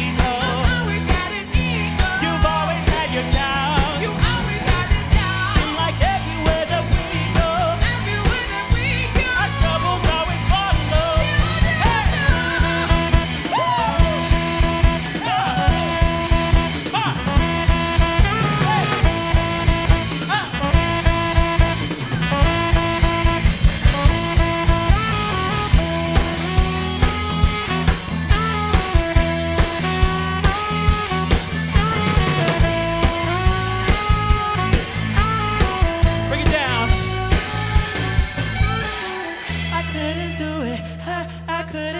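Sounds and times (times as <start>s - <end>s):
lead melody line: 0.0s - 41.7s
bass groove: 0.0s - 41.9s
drum kit: 0.0s - 41.9s.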